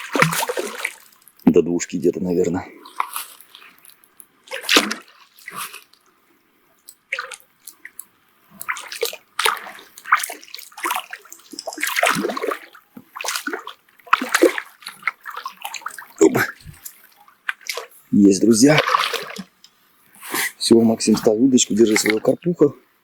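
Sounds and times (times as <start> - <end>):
water splashing from thrashing fish: 0.0 - 1.4, 2.8 - 6.0, 7.1 - 8.0, 8.6 - 19.6, 21.0 - 22.4.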